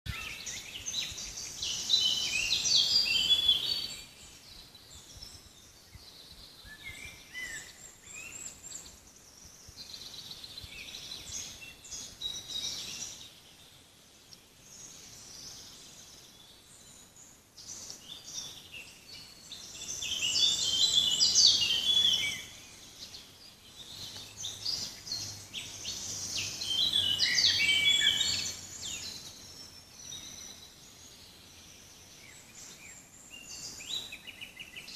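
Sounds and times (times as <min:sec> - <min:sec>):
songbirds singing: 0:00.0 - 0:34.9.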